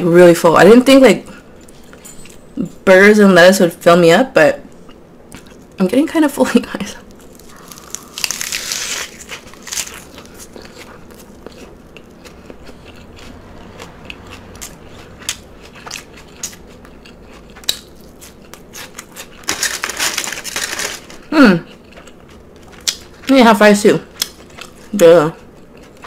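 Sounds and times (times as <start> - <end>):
crunchy bite into lettuce: 7.2 - 20.8
chewing with wet mouth clicks: 9.8 - 19.4, 21.7 - 23.3, 24.1 - 26.0.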